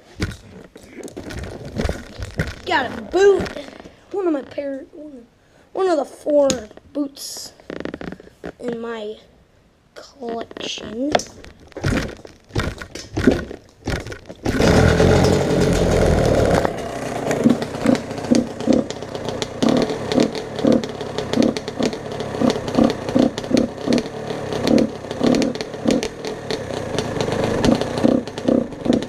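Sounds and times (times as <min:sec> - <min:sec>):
kick-starter knocks: 0:11.2 - 0:29.0
dirt bike engine running: 0:11.8 - 0:29.0.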